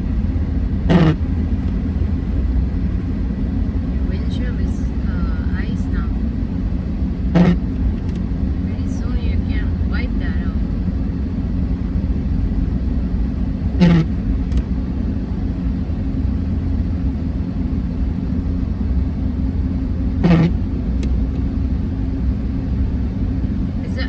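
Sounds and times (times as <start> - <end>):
car engine and tyre rumble: 0.0 - 24.0.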